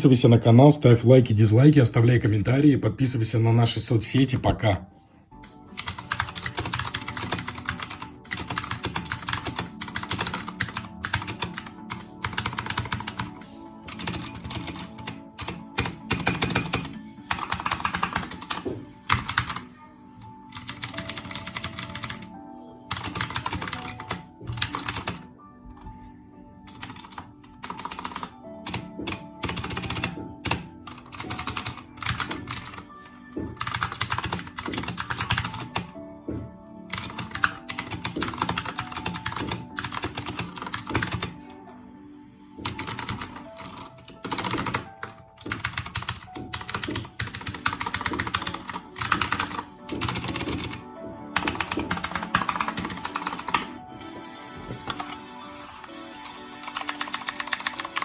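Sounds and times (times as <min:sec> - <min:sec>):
background music: 0:00.0 - 0:58.0
mechanical keyboard typing: 0:05.8 - 0:19.7, 0:20.5 - 0:22.3, 0:22.9 - 0:25.3, 0:26.7 - 0:33.0, 0:33.6 - 0:35.9, 0:36.9 - 0:41.4, 0:42.6 - 0:53.8, 0:54.7 - 0:55.2, 0:56.2 - 0:58.0.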